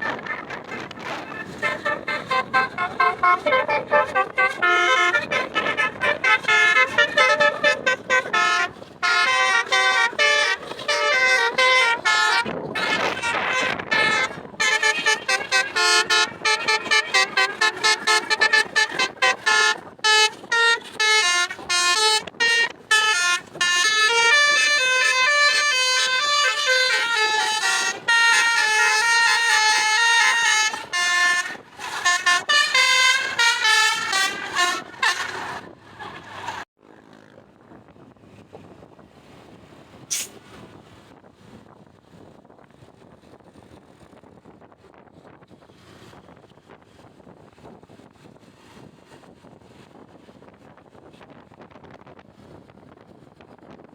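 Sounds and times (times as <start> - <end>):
multi-tone bus horn tune: 0.0 - 37.2.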